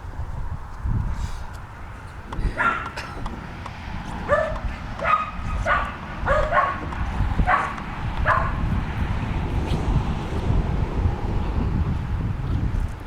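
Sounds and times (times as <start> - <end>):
puppies yipping: 2.6 - 3.0, 4.3 - 8.7.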